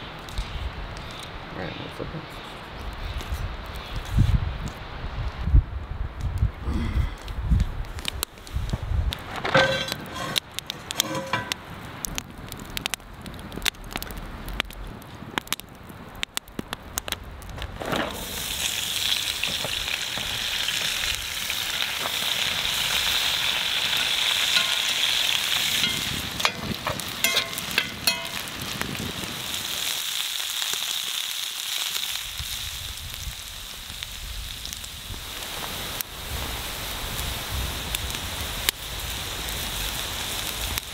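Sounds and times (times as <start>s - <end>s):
clicks and knocks: 9.3s - 11.6s
food sizzling in a hot pan: 18.1s - 40.9s.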